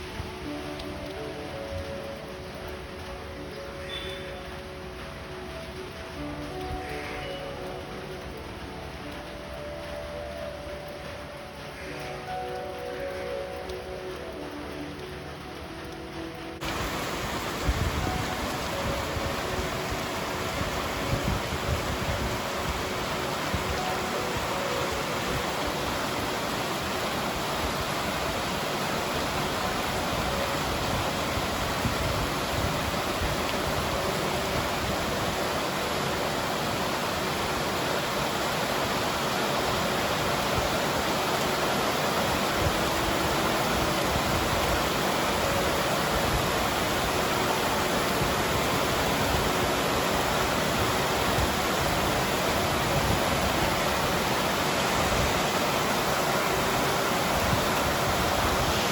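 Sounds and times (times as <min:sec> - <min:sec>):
steady rushing noise: 0:14.0 - 0:58.9.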